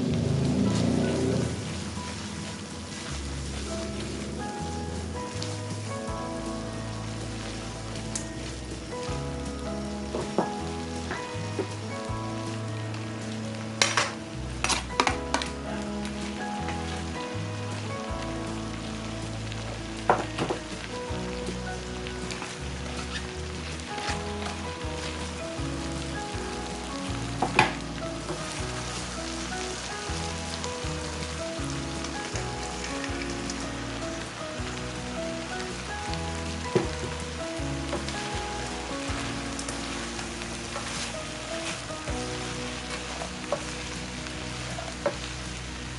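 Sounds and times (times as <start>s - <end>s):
background music: 0.0s - 45.9s
food sizzling in a pan: 0.0s - 45.9s.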